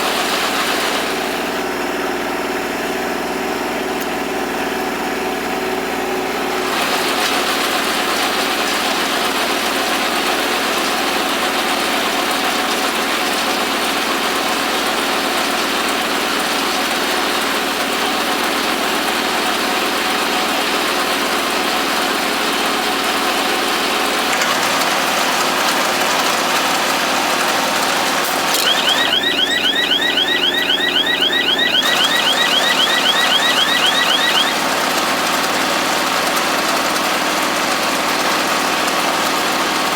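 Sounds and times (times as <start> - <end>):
rapid high chirping: 28.6 - 34.7.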